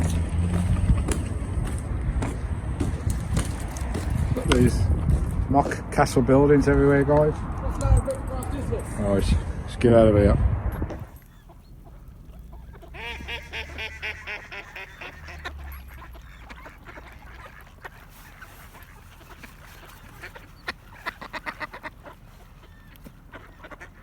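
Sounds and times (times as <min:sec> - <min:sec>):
ducks quacking: 0:00.0 - 0:04.8, 0:10.9 - 0:24.0.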